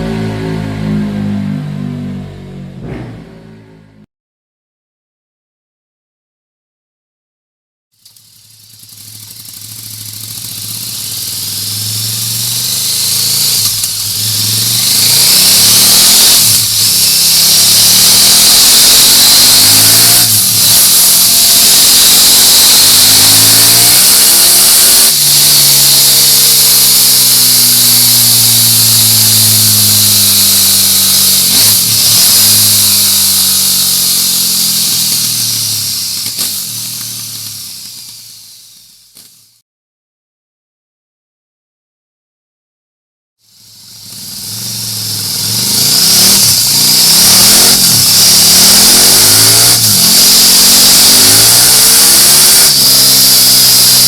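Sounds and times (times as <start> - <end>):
motorcycle engine revving: 0.0 - 4.1, 8.0 - 39.6, 43.4 - 54.0
steady hiss: 8.0 - 39.6, 43.6 - 54.0.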